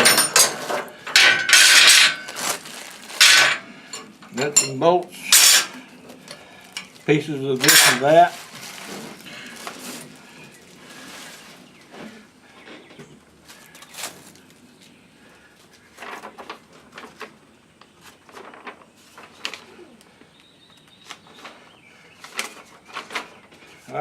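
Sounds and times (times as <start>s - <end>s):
metal parts clinking and knocking: 0.0s - 2.3s, 3.2s - 5.8s, 7.6s - 8.1s.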